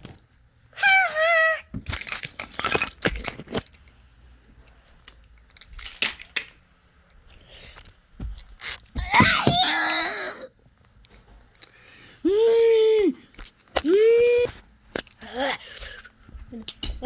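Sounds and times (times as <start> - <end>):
wooden toy trains clattering: 1.8 - 3.9
high wavering cry: 9.0 - 10.6.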